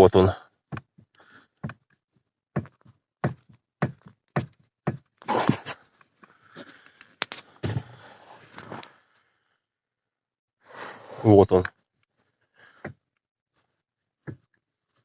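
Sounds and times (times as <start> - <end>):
steering shaft joint knocking: 2.6 - 5.1.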